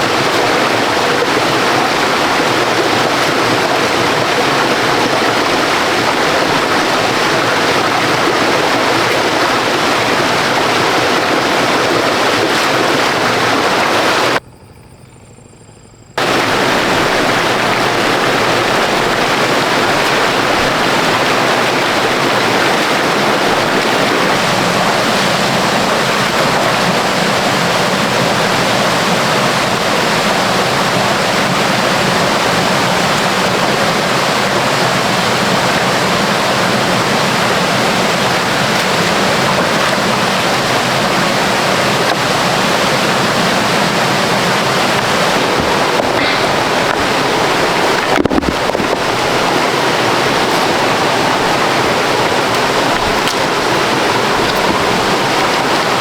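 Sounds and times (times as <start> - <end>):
waterfall roaring: 0.0 - 14.4, 16.2 - 56.0.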